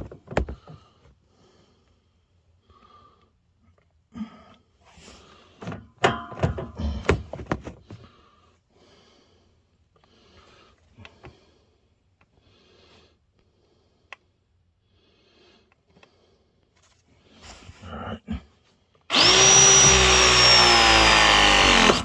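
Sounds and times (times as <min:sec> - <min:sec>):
tools and pipe fittings clattering: 0:05.6 - 0:07.6.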